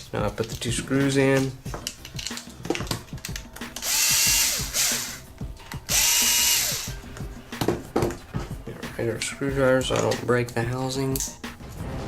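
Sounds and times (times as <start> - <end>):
electric screwdriver whining: 3.8 - 5.2, 5.9 - 7.0.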